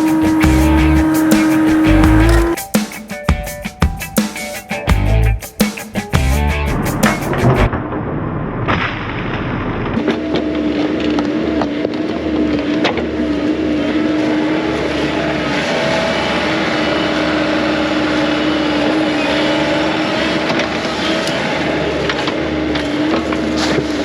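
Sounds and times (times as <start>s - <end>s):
excavator diesel engine running: 0.0s - 2.6s.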